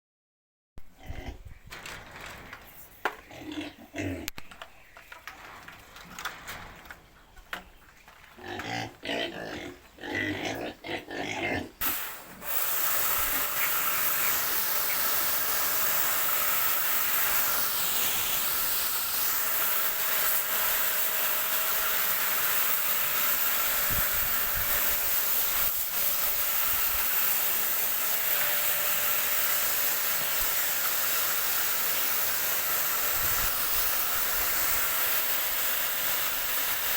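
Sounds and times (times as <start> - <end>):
pigs grunting and squealing: 0.9 - 1.6, 3.2 - 4.4, 8.3 - 11.8
hiss of spraying water: 11.8 - 36.9.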